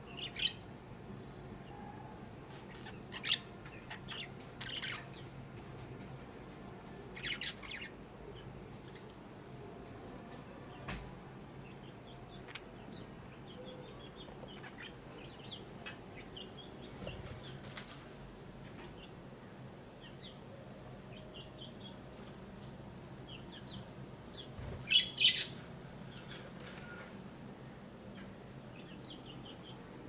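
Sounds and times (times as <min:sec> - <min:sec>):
lovebirds chirping: 0:01.3 - 0:05.3, 0:07.2 - 0:09.1, 0:11.6 - 0:17.7, 0:23.2 - 0:27.0.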